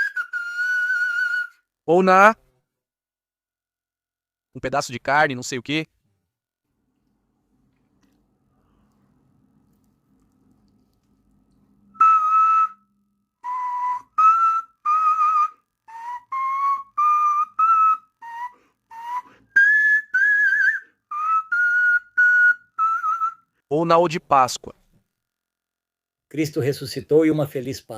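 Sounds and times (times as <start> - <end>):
whistle-like tune blown through object: 0.0 - 1.7, 10.2 - 23.6.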